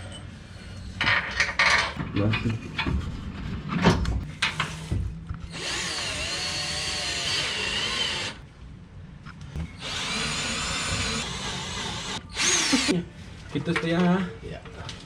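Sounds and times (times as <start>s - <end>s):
power tool driving bolts: 9.7s - 12.9s.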